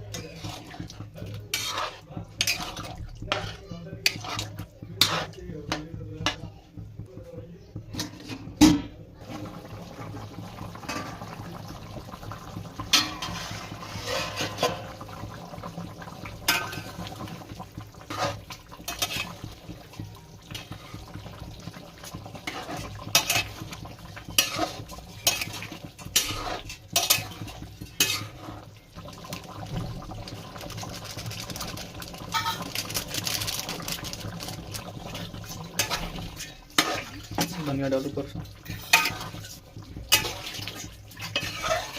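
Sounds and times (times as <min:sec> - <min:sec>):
spoon stirring and scraping pot: 0:00.0 - 0:09.4, 0:12.3 - 0:15.4, 0:16.4 - 0:41.9
spoon clinking against pot: 0:32.3 - 0:32.7.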